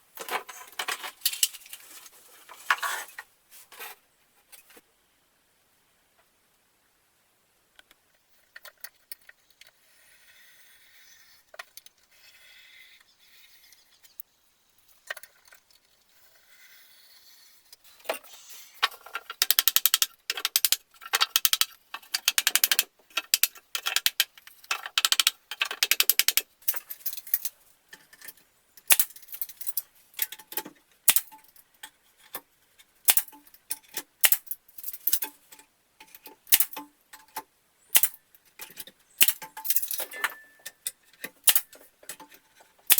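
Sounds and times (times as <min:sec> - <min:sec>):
small metal objects clinking: 0:18.8 - 0:32.4, 0:33.1 - 0:42.9.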